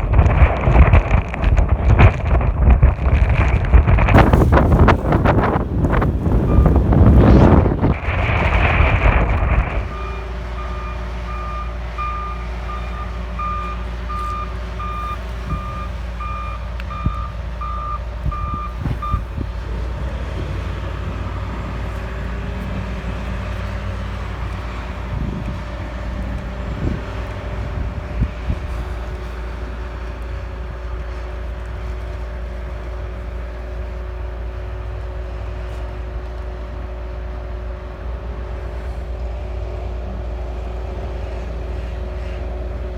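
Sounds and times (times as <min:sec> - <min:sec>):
vehicle engines idling: 0:00.0 - 0:42.9
truck reversing alarm beeping: 0:04.2 - 0:30.0.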